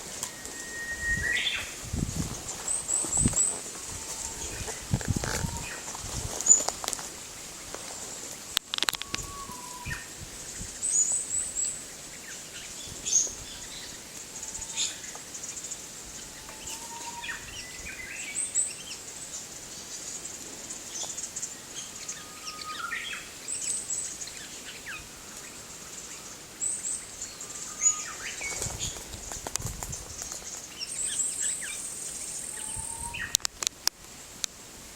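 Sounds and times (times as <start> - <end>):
bird chirping high: 0.0 - 1.8
lower whistled bird notes: 0.0 - 6.6, 8.7 - 19.1, 20.8 - 29.0, 30.1 - 33.4
steady high hiss: 0.0 - 34.9.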